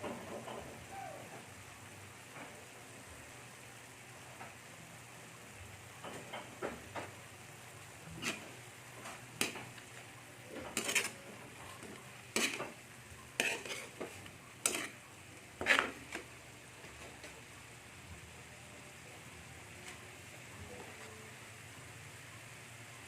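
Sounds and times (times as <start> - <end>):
faint sizzle: 0.0 - 23.0
utensil scraping frying pan: 8.0 - 17.3.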